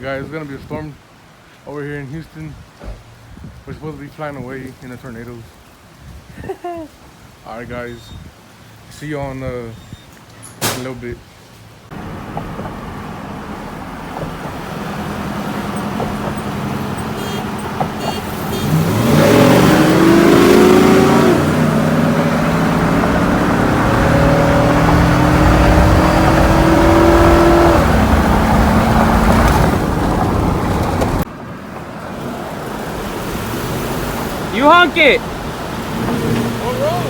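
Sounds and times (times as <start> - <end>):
truck engine accelerating hard: 11.9 - 31.3, 31.9 - 37.0.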